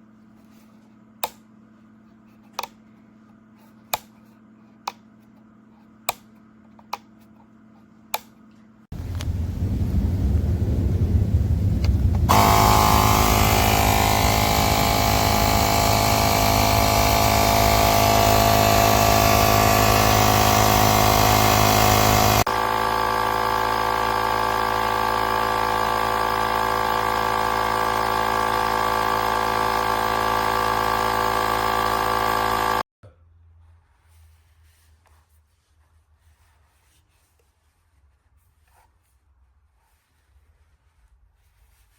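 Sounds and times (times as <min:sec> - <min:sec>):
motor running: 0:11.9 - 0:32.9.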